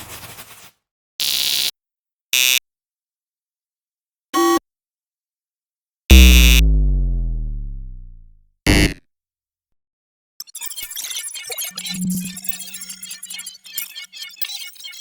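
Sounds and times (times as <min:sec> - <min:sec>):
buzzer-like blips: 0:06.1 - 0:08.3, 0:10.8 - 0:13.9
hit with deep falling tone: 0:06.1 - 0:08.4
noisy burst sound effect: 0:06.1 - 0:08.4, 0:11.7 - 0:13.2.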